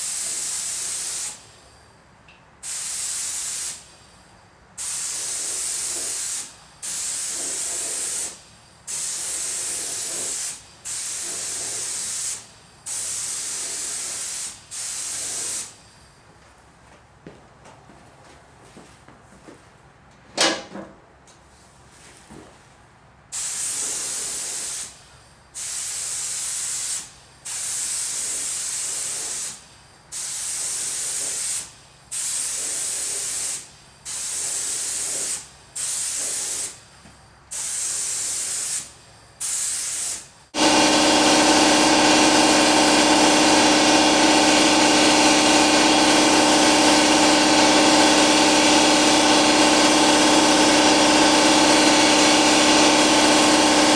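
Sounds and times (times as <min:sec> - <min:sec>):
spray gun hissing bursts: 0:00.0 - 0:01.4, 0:02.6 - 0:03.9, 0:04.8 - 0:15.8, 0:23.3 - 0:25.0, 0:25.6 - 0:36.8, 0:37.5 - 0:53.9
air compressor humming: 0:00.0 - 0:18.9, 0:23.3 - 0:53.9.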